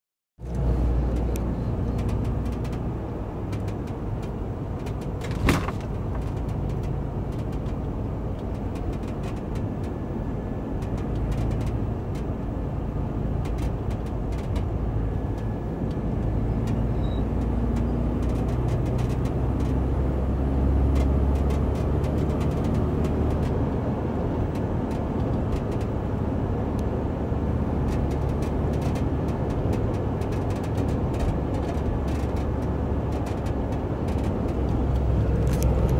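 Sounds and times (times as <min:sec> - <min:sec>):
road and engine rumble: 0:00.4 - 0:35.9
creaks and ticks from rear door: 0:01.2 - 0:02.9, 0:17.4 - 0:19.8, 0:20.9 - 0:23.6, 0:27.9 - 0:35.9.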